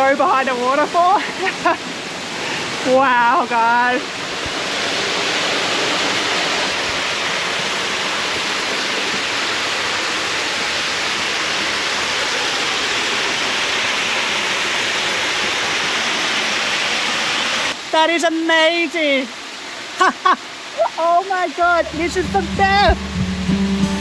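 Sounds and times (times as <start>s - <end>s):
waterfall rushing: 0.0s - 24.0s.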